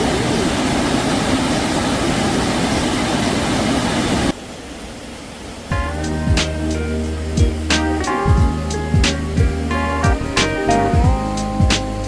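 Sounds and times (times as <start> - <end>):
stream rushing: 0.0 - 5.7.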